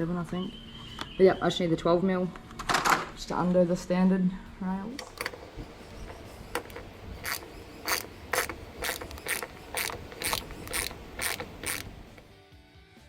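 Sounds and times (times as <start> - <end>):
ratchet wrench clicking: 5.0 - 12.3.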